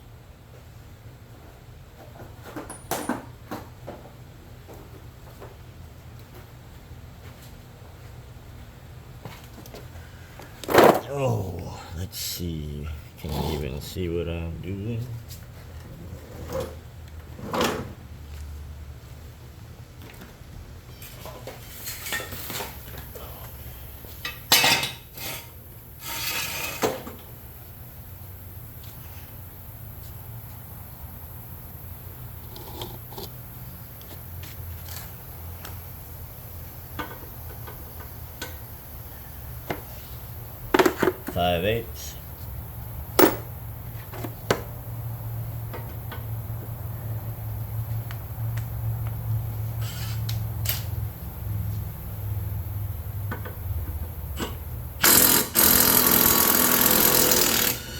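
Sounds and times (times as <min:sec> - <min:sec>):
steady low hum: 0:09.9 - 0:17.1
short scrape: 0:26.0 - 0:26.9, 0:49.8 - 0:50.2.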